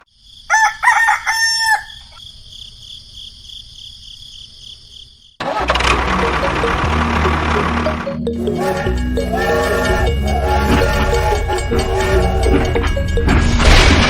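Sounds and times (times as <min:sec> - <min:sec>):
rooster crowing: 0:00.4 - 0:02.2, 0:08.4 - 0:13.2
high-pitched buzz: 0:06.0 - 0:13.9
loud music: 0:06.0 - 0:14.0.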